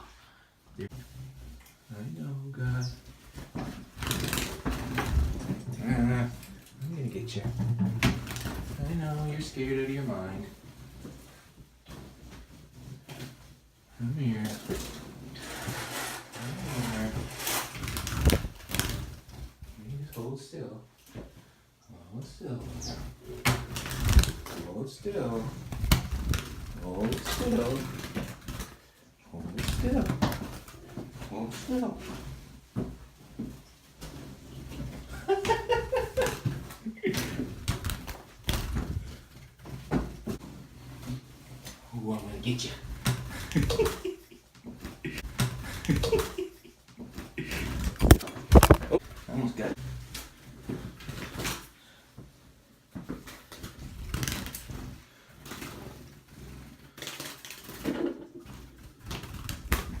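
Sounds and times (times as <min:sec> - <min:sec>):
rustling: 0:00.0 - 1:00.0
knocks and thumps of scrambling: 0:03.3 - 0:06.5, 0:07.2 - 0:09.0, 0:42.8 - 0:49.1.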